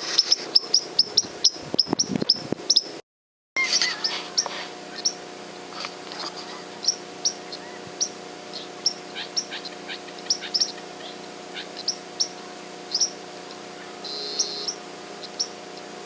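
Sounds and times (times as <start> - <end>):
small birds chirping: 0.0 - 3.0, 3.6 - 16.0
buzzy bird note: 3.6 - 16.0
faint steady hum: 3.6 - 16.0.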